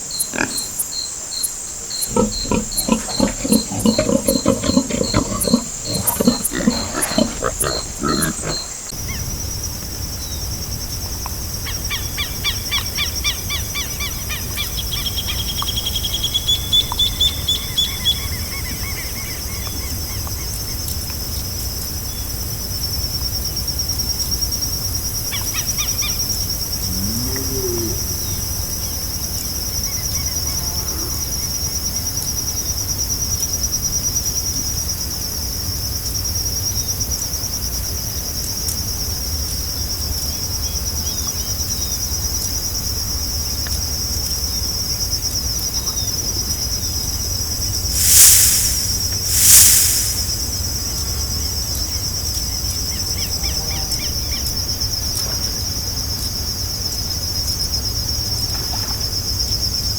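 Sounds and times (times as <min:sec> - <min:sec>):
crickets trilling: 0:00.0 - 0:59.9
short rushing swells: 0:47.9 - 0:51.0.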